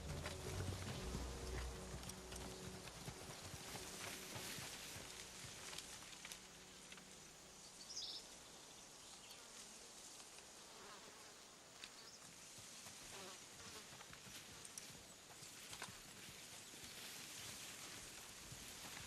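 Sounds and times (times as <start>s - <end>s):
insects buzzing: 0.0s - 14.8s.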